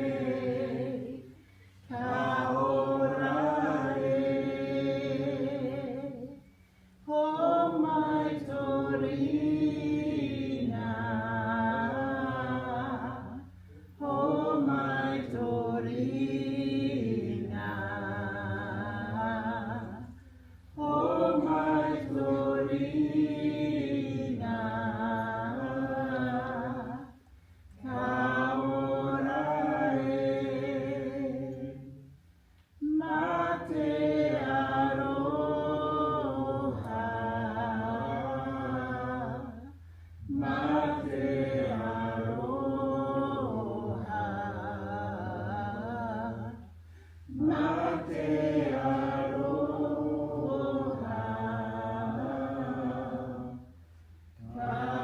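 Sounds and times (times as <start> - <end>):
group singing unaccompanied: 0.0 - 6.5, 7.1 - 20.2, 20.8 - 32.2, 32.8 - 46.7, 47.3 - 53.8, 54.4 - 55.0.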